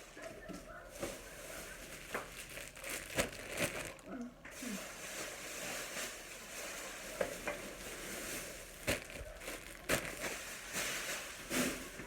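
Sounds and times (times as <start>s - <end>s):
packaging rustling: 1.8s - 4.0s, 7.2s - 11.8s.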